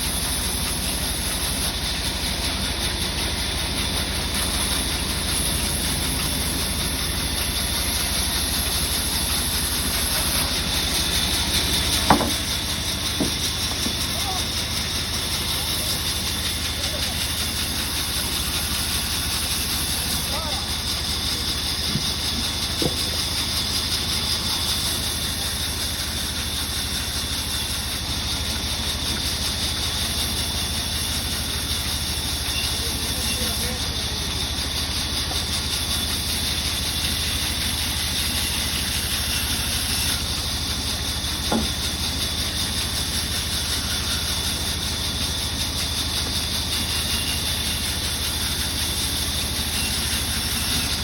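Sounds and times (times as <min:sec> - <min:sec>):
sawmill saw running: 0:00.0 - 0:51.0
sharp knock: 0:12.1 - 0:12.4.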